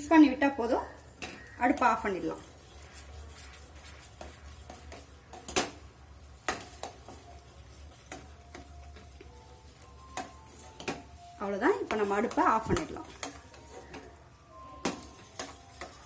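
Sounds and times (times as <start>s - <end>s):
spoon stirring syrup in pan: 1.3s - 11.2s, 14.9s - 16.0s.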